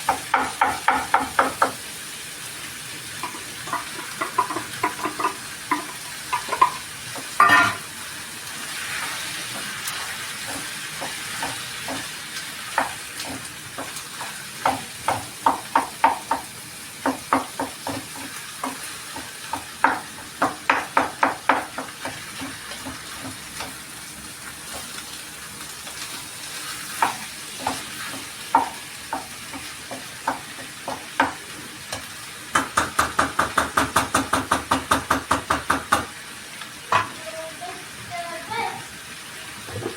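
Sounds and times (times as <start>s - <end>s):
food sizzling in a pan: 0.0s - 39.9s
spatula scraping a pan: 3.2s - 14.4s, 25.8s - 32.1s.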